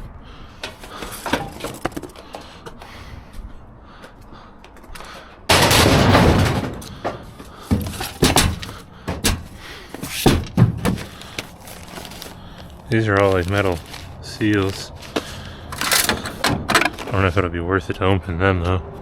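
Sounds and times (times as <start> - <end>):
package ripping open: 11.2 - 16.0.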